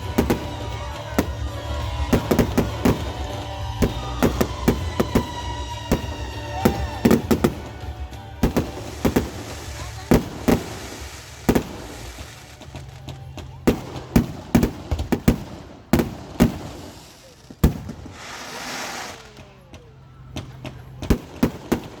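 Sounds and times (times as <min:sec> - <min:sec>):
fireworks bangs: 0:00.0 - 0:22.0
hissing crackle: 0:08.4 - 0:13.7, 0:16.5 - 0:19.7.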